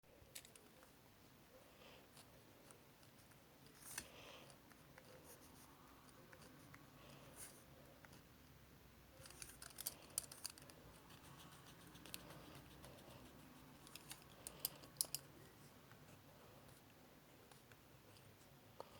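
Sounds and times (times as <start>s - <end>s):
small objects clicking and scraping: 0.3s - 0.8s, 9.2s - 10.8s, 13.8s - 15.3s.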